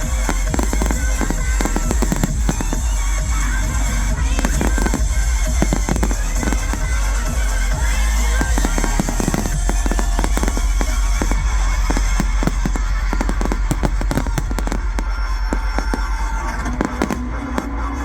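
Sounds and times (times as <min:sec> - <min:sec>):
fireworks bursting and crackling: 0:00.0 - 0:18.0
music soundtrack with heavy bass: 0:00.0 - 0:18.0.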